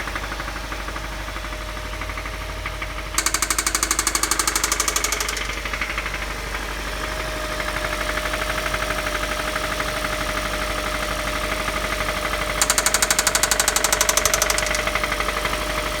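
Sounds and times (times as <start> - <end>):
engine rod knocking: 2.0 - 16.0.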